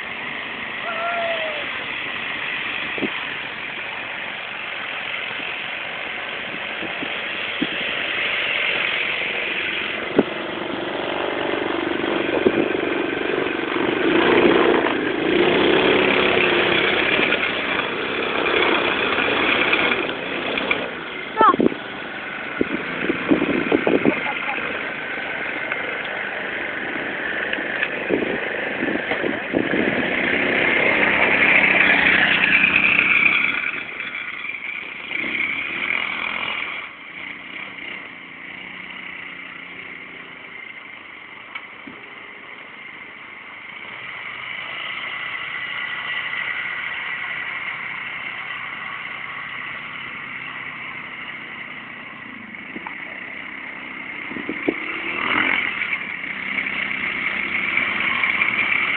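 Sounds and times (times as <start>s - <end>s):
atv engine revving: 0.0s - 58.9s.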